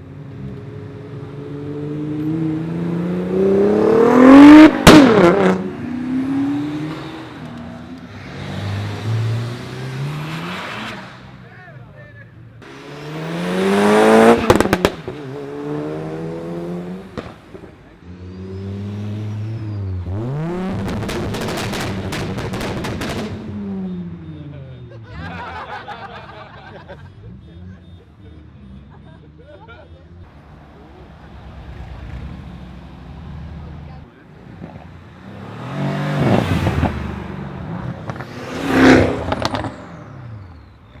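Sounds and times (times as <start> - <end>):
car engine revving: 0.0 - 11.5, 12.6 - 24.5, 30.3 - 41.0
exhaust bangs and crackles: 3.4 - 9.8, 12.6 - 18.0, 18.9 - 24.4, 30.6 - 41.0
sharp exhaust cracks: 20.1 - 23.9.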